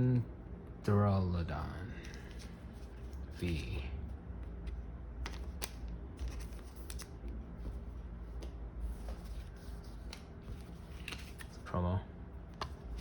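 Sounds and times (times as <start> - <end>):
trading cards clicking and snapping: 4.6 - 7.2, 10.0 - 10.3, 10.9 - 11.6, 12.5 - 13.0
card rustle: 4.6 - 11.7.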